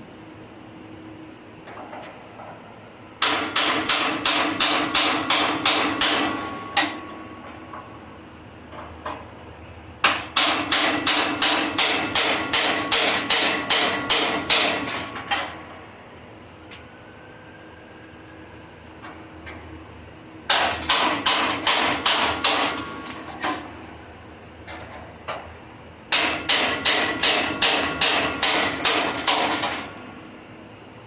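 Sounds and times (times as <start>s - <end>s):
hammer striking steel: 3.2s - 7.9s, 10.0s - 15.6s, 20.5s - 23.6s, 26.1s - 29.9s.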